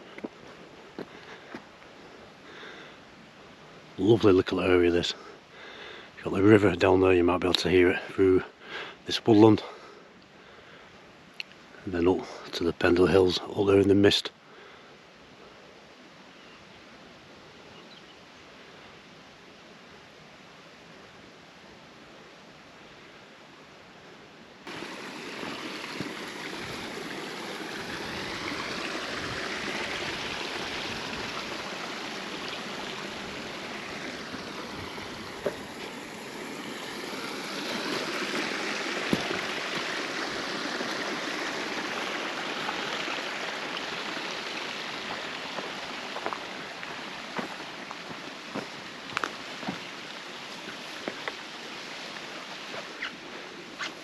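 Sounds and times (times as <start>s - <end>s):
river water rushing: 0.0s - 4.0s, 24.6s - 54.0s.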